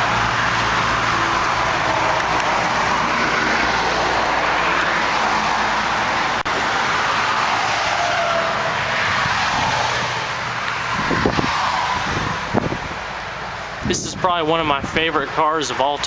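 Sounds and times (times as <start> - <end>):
car engine idling: 0.0 - 7.2
highway traffic: 0.0 - 16.0
wind noise: 8.4 - 15.3.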